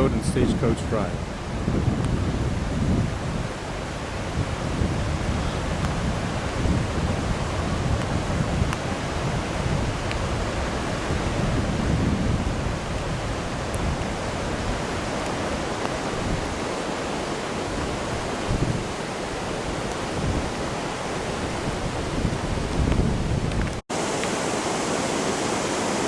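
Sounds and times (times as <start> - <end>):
wind buffeting microphone: 0.0 - 23.8
floodwater rushing: 0.0 - 26.0.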